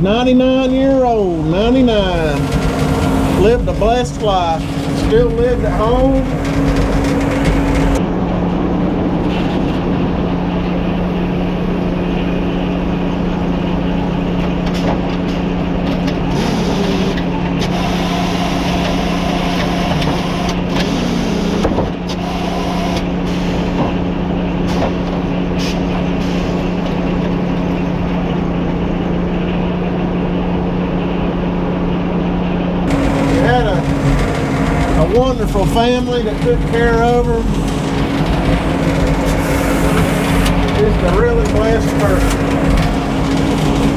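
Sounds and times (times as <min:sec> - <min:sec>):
low engine drone: 0:00.0 - 0:43.9
mill machinery knocks and clatter: 0:01.9 - 0:08.0, 0:21.6 - 0:22.2, 0:23.7 - 0:28.4, 0:32.8 - 0:43.9.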